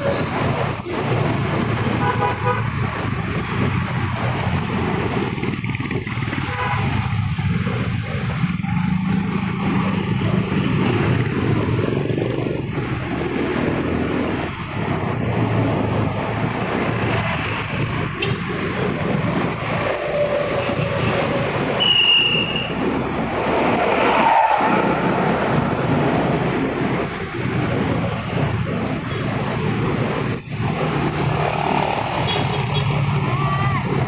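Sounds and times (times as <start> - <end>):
vehicle engine hum: 0.0 - 34.0
wind and road noise: 0.0 - 34.0.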